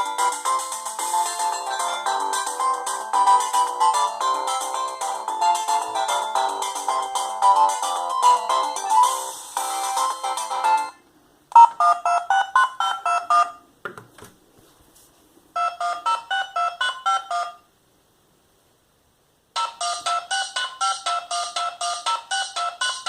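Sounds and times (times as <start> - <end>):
electronic beeping ringtone: 0.0 - 11.0, 11.6 - 13.6, 15.6 - 17.7, 19.6 - 23.0.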